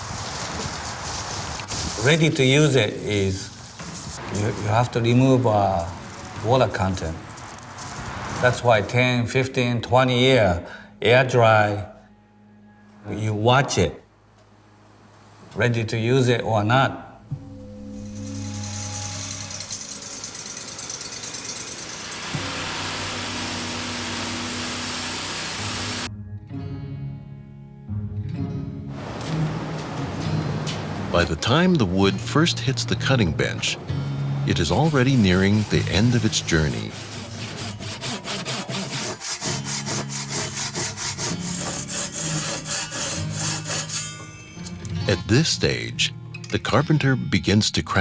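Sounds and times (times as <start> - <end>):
quiet background music: 8.6 - 20.8, 25.6 - 48.0
woodworking power tool running: 18.4 - 26.1, 36.9 - 43.9
hand saw cutting wood: 19.5 - 26.1, 34.4 - 44.4.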